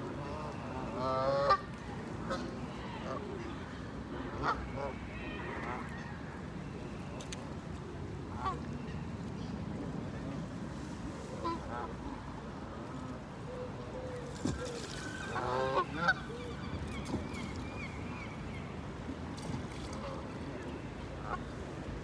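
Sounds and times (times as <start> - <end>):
low background noise: 0.0 - 22.0
waterfowl calling: 14.4 - 18.8.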